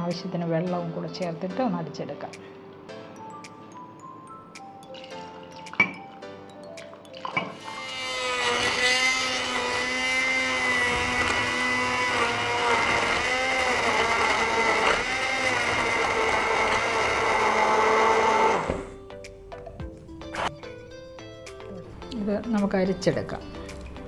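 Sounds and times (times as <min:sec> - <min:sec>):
electric blender running: 0:07.5 - 0:19.0.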